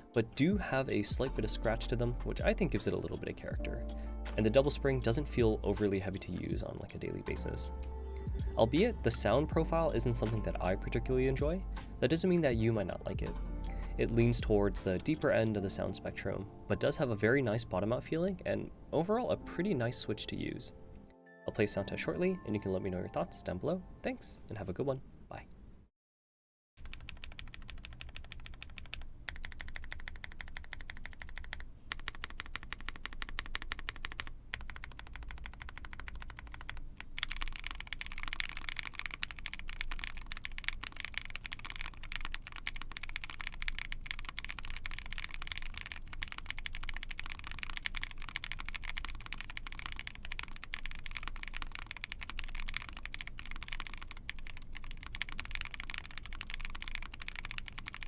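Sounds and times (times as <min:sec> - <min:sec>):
mechanical keyboard typing: 0:26.8 - 0:58.0.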